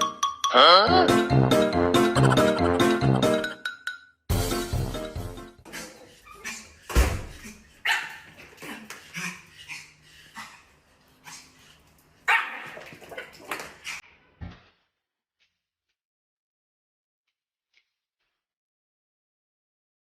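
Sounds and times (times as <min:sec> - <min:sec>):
dog barking: 0:07.8 - 0:08.3, 0:12.3 - 0:12.8.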